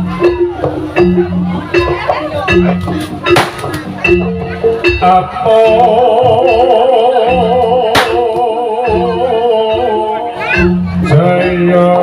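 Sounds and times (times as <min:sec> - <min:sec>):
sharp crack: 0:03.3 - 0:03.9, 0:07.9 - 0:08.5.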